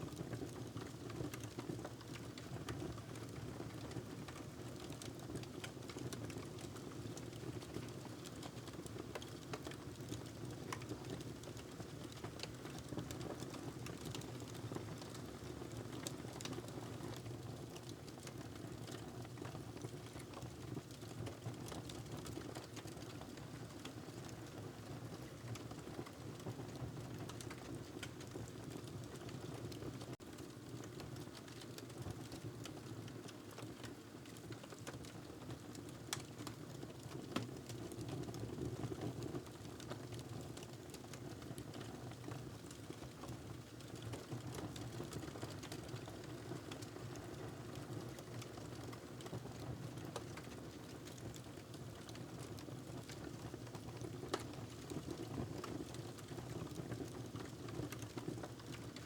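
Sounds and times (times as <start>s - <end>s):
wood fire crackling: 53.9s - 54.5s.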